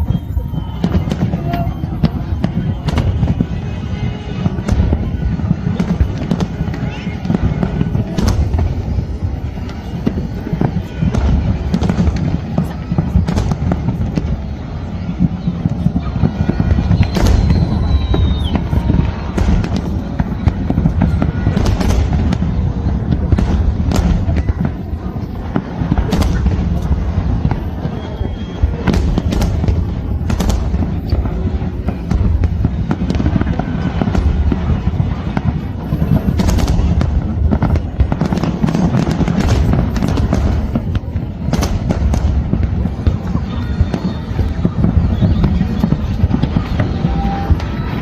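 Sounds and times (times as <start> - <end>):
deep rumble of firework bursts: 0.0 - 48.0
sharp firework bangs: 0.0 - 48.0.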